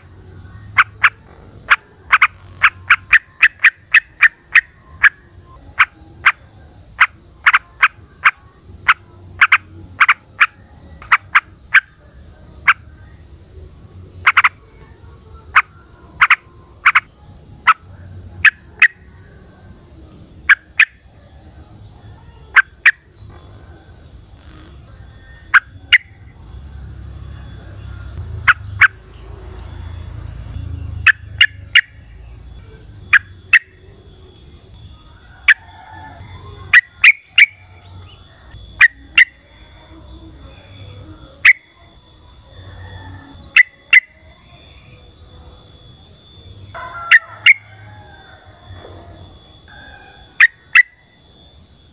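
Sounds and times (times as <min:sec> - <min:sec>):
bulbul calling: 0:00.0 - 0:12.0, 0:27.5 - 0:29.7, 0:30.9 - 0:32.3
insects trilling: 0:00.0 - 0:51.9.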